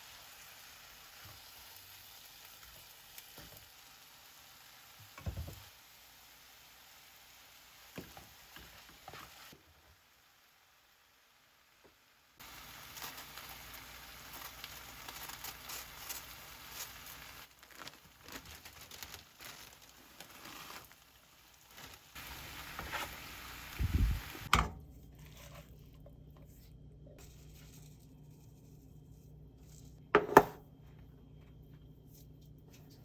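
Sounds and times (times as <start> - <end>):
rustling and crinkling handling: 12.4 - 24.2
small clicks and crackles: 14.3 - 21.0.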